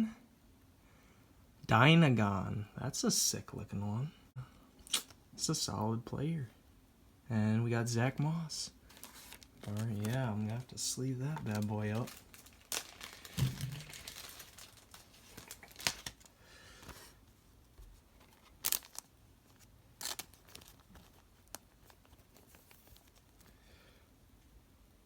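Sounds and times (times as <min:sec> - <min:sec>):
plastic card sleeve crinkling: 0:08.8 - 0:23.6.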